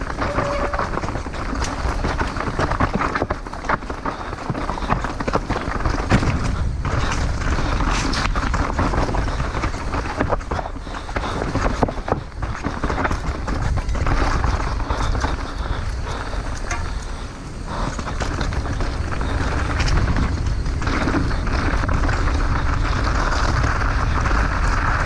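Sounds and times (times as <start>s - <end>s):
bike chain and frame rattling: 0.0s - 25.0s
bike tyres rolling over rocks: 0.0s - 25.0s
wind buffeting microphone: 0.0s - 25.0s.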